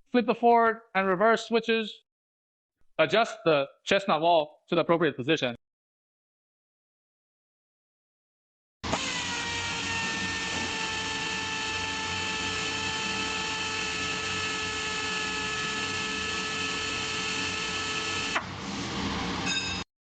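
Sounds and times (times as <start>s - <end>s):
air motor whine: 8.9s - 19.8s.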